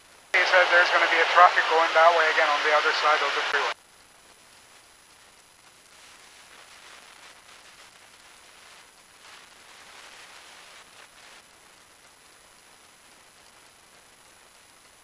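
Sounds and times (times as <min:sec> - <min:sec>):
headset intercom hiss: 0:00.4 - 0:03.8
thin high whine: 0:00.4 - 0:03.8.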